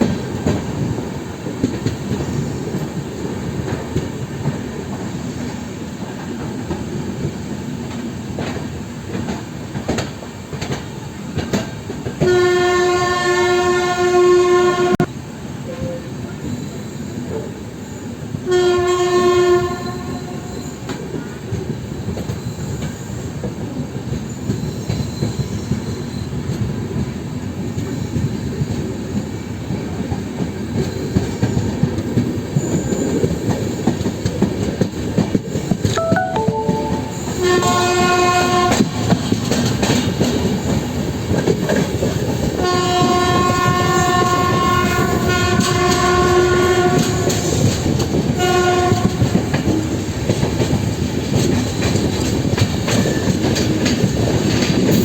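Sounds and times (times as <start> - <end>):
train wheels clattering over track: 0.0 - 12.4, 19.7 - 35.9, 38.6 - 55.0
locomotive horn blasts: 12.3 - 15.0, 48.4 - 49.2.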